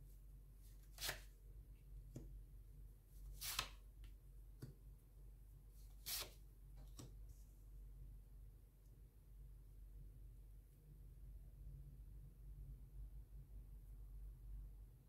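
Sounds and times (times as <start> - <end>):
cards swishing and tapping: 3.4 - 3.8, 6.0 - 7.2.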